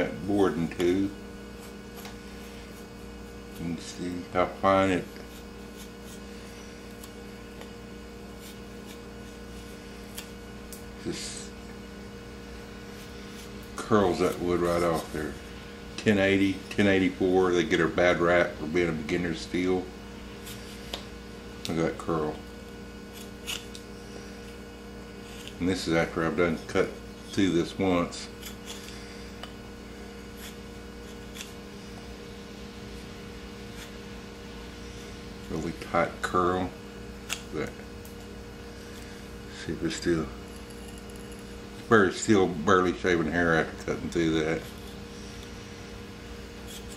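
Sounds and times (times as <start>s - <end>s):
low electrical hum: 0.0s - 46.9s
knife scraping wood: 0.4s - 10.4s, 23.0s - 24.6s, 25.2s - 32.0s, 38.2s - 41.9s, 44.1s - 45.6s, 46.6s - 46.9s.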